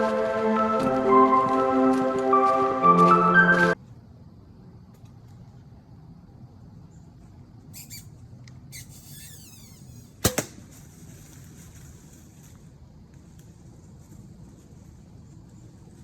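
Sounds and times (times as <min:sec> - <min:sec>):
quiet woods background: 0:00.0 - 0:16.0
bow shot sharp crack: 0:10.2 - 0:10.8.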